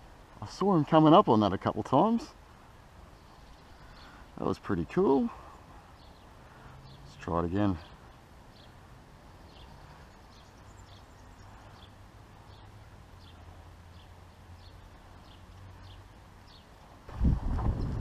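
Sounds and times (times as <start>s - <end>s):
small bird chirping: 3.1s - 4.3s, 5.9s - 16.8s.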